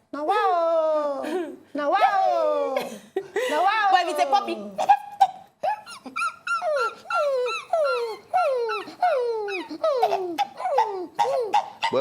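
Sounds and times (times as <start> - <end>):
person imitating puppy whimpering: 3.8 - 12.0.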